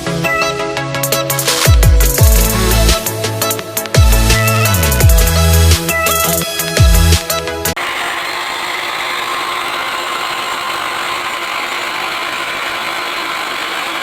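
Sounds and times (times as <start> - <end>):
music: 0.0 - 7.8
small power tool whirring: 1.6 - 7.1, 7.8 - 14.0.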